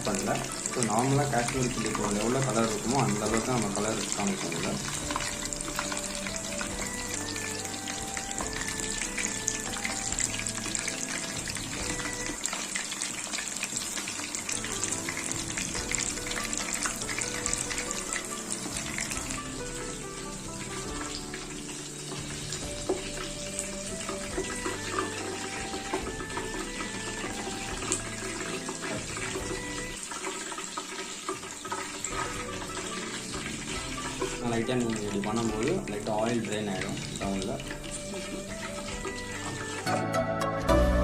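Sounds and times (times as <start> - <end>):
chicken deep-frying in oil: 0.0 - 40.0
light background music: 0.0 - 41.0.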